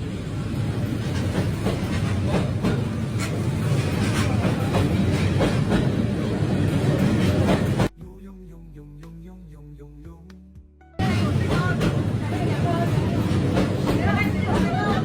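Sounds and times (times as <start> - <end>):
train rumbling past: 0.0 - 7.9, 11.0 - 15.0
wheels clacking over rail joints: 0.6 - 7.9.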